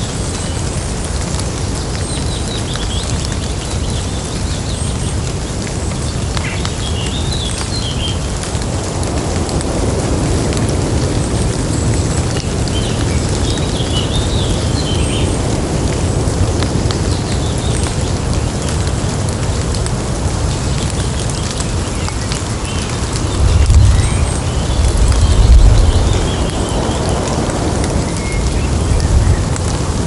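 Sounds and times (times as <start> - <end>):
rain dripping on wet leaves: 0.0 - 30.0
distant thunder rumble: 22.9 - 30.0.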